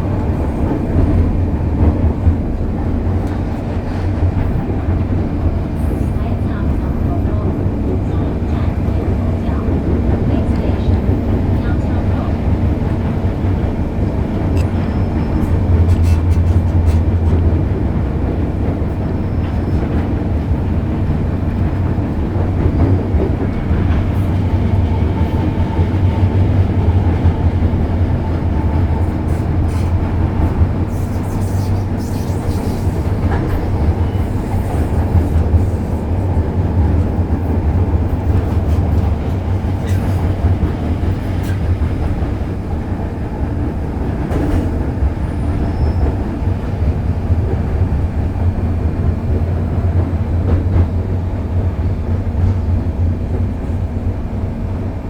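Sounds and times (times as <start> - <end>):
train rumbling along track: 0.0 - 55.0.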